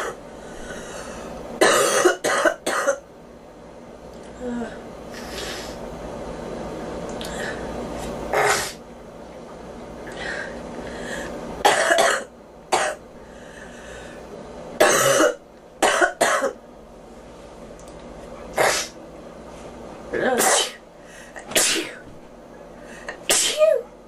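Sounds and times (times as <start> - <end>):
girl coughing: 1.6 - 3.0, 11.6 - 13.0, 14.8 - 16.6, 20.1 - 20.8, 21.5 - 22.0, 23.3 - 23.8.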